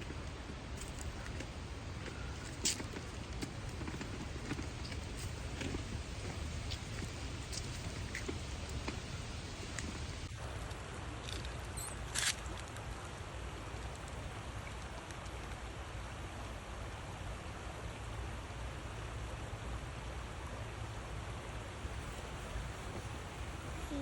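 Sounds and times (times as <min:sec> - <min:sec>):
wind rumble on microphone: 0:00.0 - 0:10.3.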